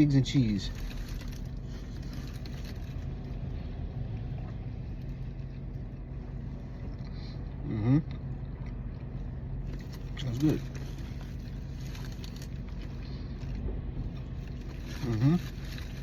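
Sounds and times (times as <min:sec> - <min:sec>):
car engine idling hum: 0:00.0 - 0:16.0.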